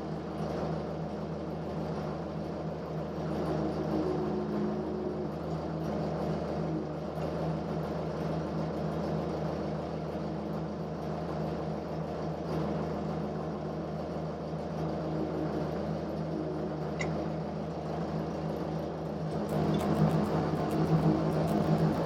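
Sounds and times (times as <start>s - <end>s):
machine humming: 0.0s - 8.7s, 13.2s - 22.0s.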